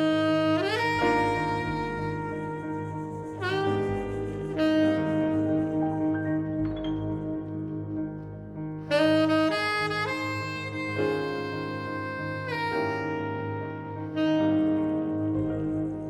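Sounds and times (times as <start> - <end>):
soft low accompaniment: 0.0 - 16.0
tenor saxophone jazz ballad: 0.0 - 16.0.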